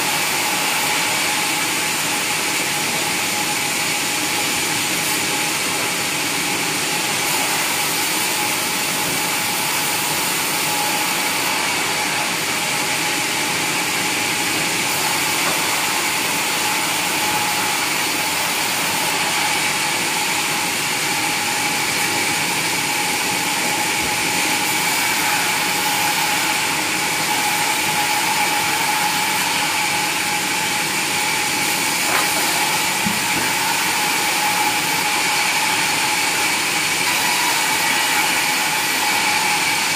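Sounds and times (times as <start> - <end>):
sawmill saw running: 0.0 - 39.9.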